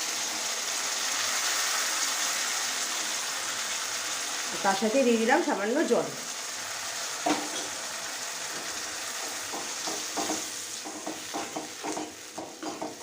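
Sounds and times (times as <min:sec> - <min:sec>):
vegetables sizzling in a pan: 0:00.0 - 0:13.0
spatula scraping a pan: 0:08.5 - 0:13.0.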